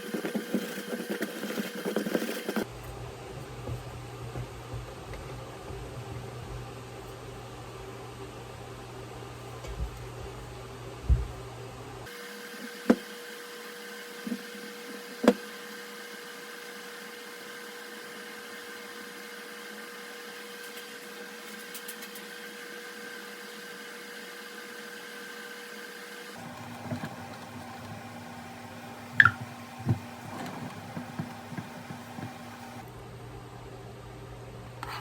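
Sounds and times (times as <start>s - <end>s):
electrical hum with tone: 2.6s - 15.8s, 26.4s - 35.0s.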